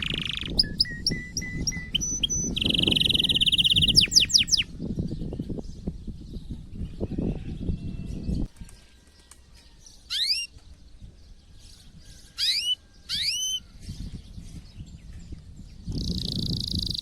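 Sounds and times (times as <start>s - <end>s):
canary whistled calls: 0.0s - 4.7s, 10.1s - 10.5s, 12.2s - 13.6s.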